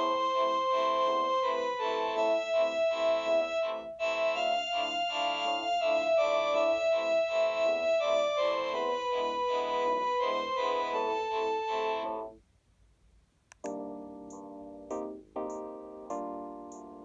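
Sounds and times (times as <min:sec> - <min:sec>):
cordless phone ringtone melody: 0:00.0 - 0:12.0.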